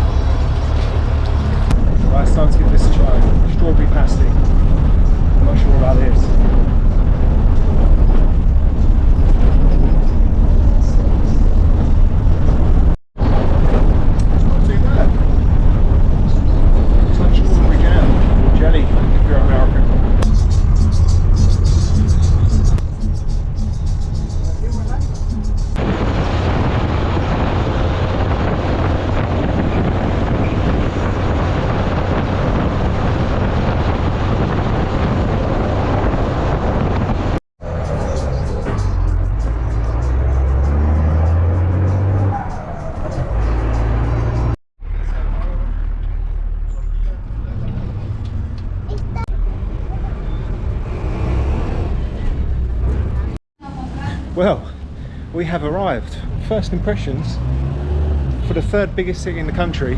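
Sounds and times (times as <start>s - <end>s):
bus engine and road noise: 0.0s - 59.9s
wind rushing: 0.7s - 44.6s.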